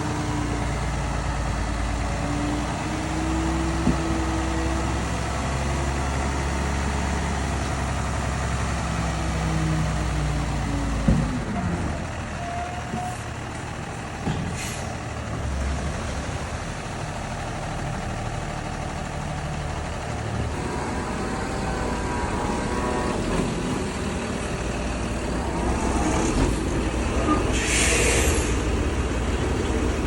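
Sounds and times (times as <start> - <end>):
diesel engine rumble: 0.0 - 30.0
short hiss: 27.5 - 28.7.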